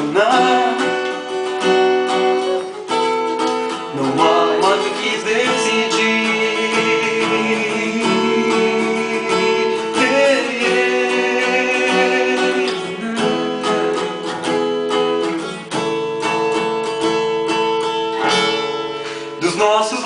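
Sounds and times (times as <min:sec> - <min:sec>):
person singing: 0:00.0 - 0:14.2
strummed acoustic guitar: 0:00.0 - 0:20.0.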